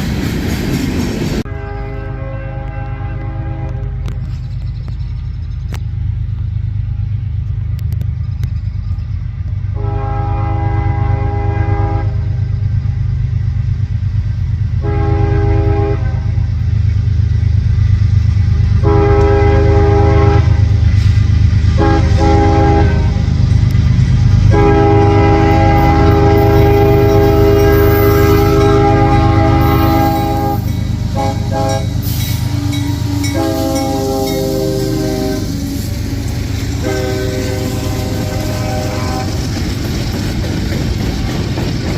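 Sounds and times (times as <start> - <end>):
passing train rumble: 0.0 - 41.9
locomotive air horn blasts: 1.4 - 4.3, 9.7 - 12.4, 14.8 - 16.5, 18.8 - 20.8, 21.7 - 23.4, 24.5 - 39.5.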